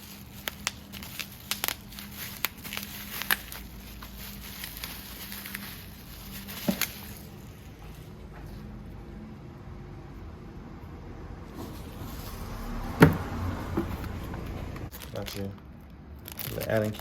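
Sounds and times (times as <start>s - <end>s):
packaging clicks: 0.0s - 7.4s
plastic and tape crinkling: 0.0s - 8.6s, 13.7s - 17.0s.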